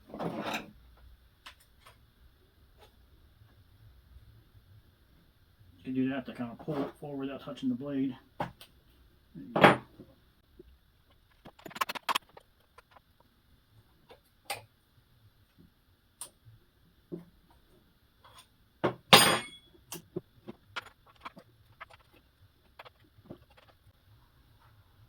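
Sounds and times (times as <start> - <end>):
metallic clank: 19.2 - 19.6.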